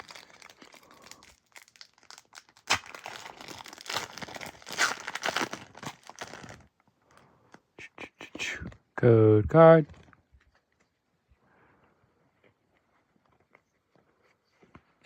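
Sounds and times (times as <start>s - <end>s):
foil wrapper crinkling and tearing: 0.0s - 6.7s.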